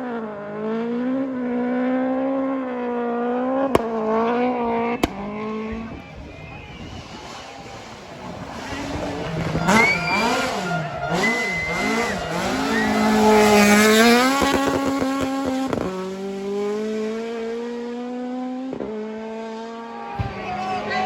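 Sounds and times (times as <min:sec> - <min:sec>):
rally car engine revving: 0:00.0 - 0:21.0
gearshift crack: 0:03.8 - 0:06.0.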